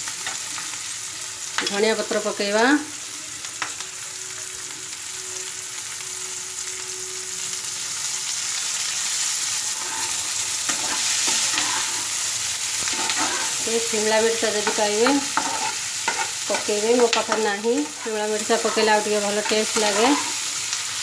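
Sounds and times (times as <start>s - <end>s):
onions sizzling in oil: 0.0s - 21.0s
spoon scraping pan: 9.7s - 20.7s.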